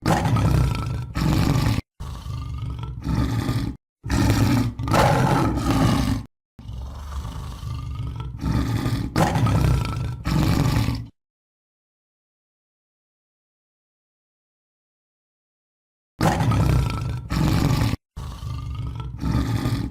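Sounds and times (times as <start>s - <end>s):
tiger roaring and growling: 0.0s - 11.2s, 16.2s - 19.9s.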